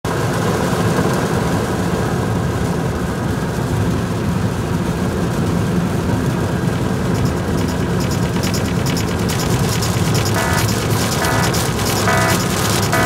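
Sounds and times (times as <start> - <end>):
car road and engine noise: 0.1 - 13.0
heavy rain on car: 0.1 - 13.0.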